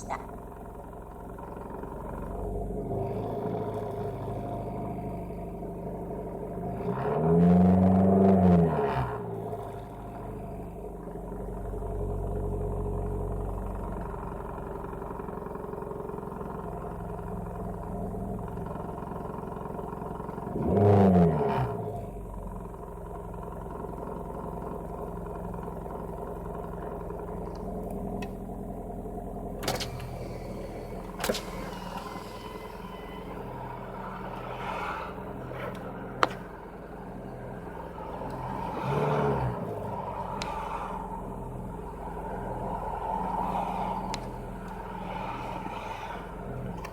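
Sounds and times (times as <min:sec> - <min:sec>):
car engine idling: 0:00.0 - 0:46.9
mechanical engine noise: 0:08.9 - 0:46.9.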